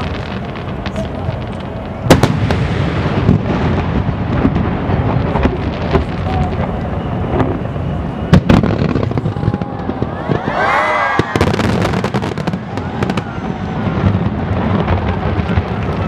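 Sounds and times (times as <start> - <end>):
fireworks bangs: 0.0 - 16.0
fireworks crackling pops: 0.0 - 16.0
crowd voices: 4.8 - 16.0.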